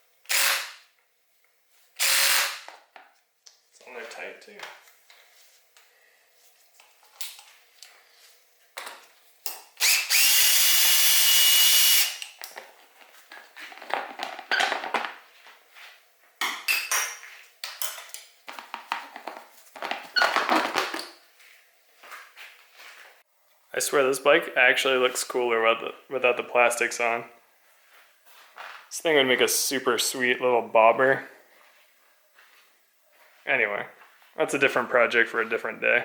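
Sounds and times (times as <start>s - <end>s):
power drill whining: 0.3s - 0.8s, 2.0s - 2.7s, 9.8s - 12.2s
tools and parts knocking and rattling: 8.8s - 9.8s, 12.2s - 15.2s, 16.4s - 21.2s.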